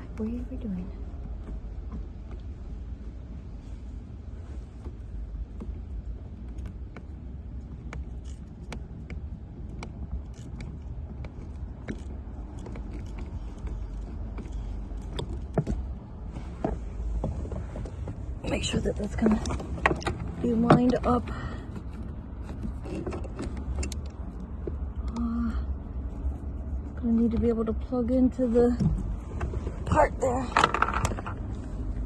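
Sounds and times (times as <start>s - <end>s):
low steady rumble: 0.0s - 32.0s
plastic housing clicks and knocks: 30.5s - 31.5s.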